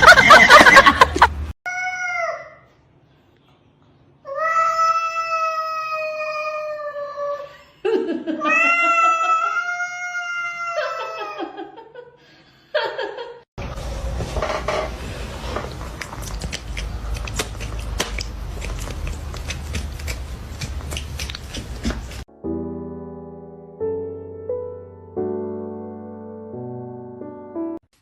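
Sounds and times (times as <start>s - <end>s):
cat yowling: 8.4s - 11.4s
piano music: 22.3s - 27.8s.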